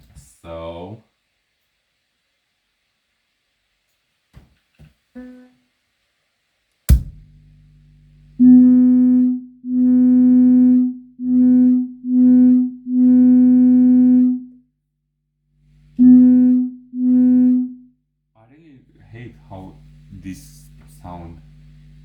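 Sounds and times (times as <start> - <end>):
sharp pop: 6.9 - 7.4
low hum: 6.9 - 14.4, 15.6 - 17.7, 18.7 - 22.0
buzzy test tone bursts: 15.6 - 17.6, 18.7 - 22.0.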